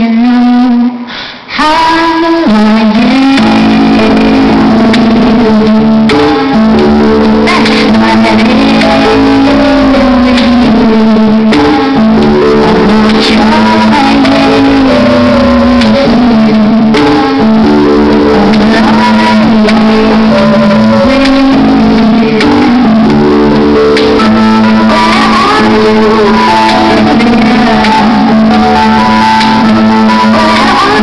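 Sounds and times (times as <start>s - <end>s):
person singing: 0.0s - 31.0s
plucked guitar: 2.9s - 31.0s.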